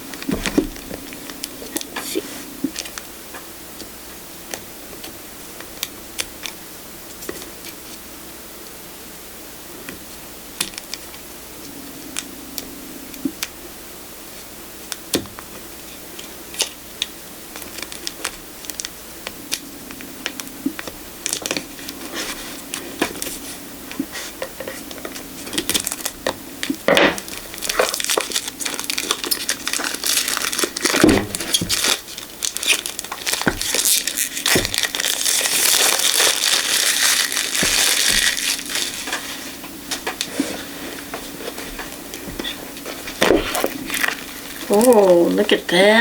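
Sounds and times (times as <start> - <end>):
packaging torn and crinkled: 16.5 - 19.7, 20.3 - 23.3, 25.1 - 39.6, 43.0 - 45.3.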